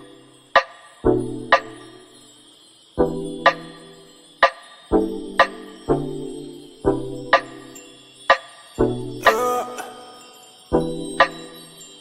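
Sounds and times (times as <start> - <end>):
background music with steady beat: 0.0 - 12.0.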